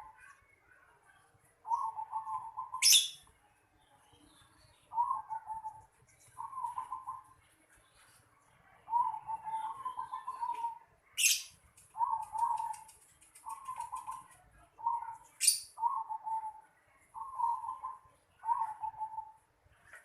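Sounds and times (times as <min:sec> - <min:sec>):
dove cooing: 0:01.6 - 0:03.1, 0:04.9 - 0:07.3, 0:08.9 - 0:10.9, 0:12.0 - 0:19.4.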